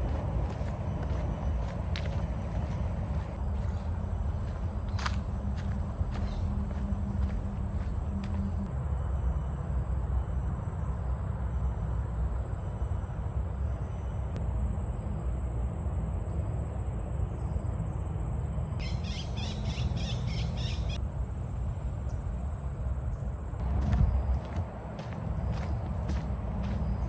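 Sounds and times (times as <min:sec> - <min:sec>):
steady low rumble: 0:00.0 - 0:08.9, 0:23.6 - 0:27.0.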